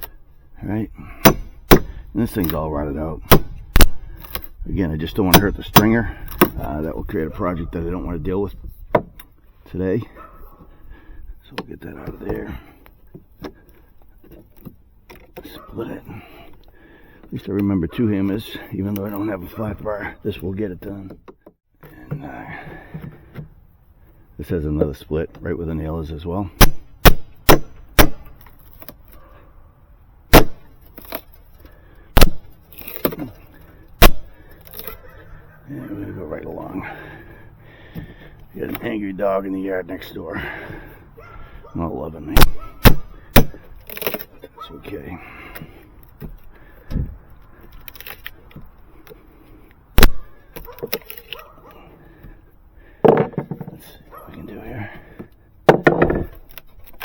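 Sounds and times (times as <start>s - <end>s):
hammer striking wood: 1.2s - 2.0s, 3.3s - 4.0s, 26.6s - 28.3s, 30.3s - 30.7s, 32.2s - 33.2s, 34.0s - 34.3s, 42.4s - 43.6s, 50.0s - 50.2s, 55.7s - 56.4s.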